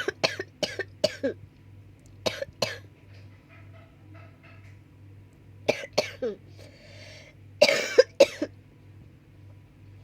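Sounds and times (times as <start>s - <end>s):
person coughing: 0.0s - 1.4s, 5.7s - 6.4s, 7.6s - 8.5s
steady low hum: 0.0s - 10.0s.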